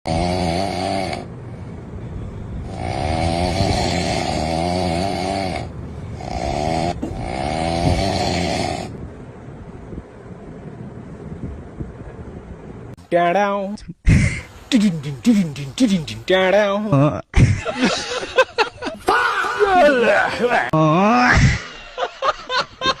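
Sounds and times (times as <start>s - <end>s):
person snoring loudly: 0.1s - 1.3s, 2.6s - 9.0s
low background noise: 8.8s - 23.0s.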